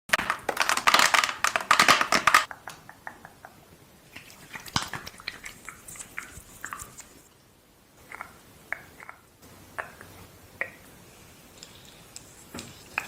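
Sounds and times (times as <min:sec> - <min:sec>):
crackly rubbing and rustling: 0:11.2 - 0:13.0.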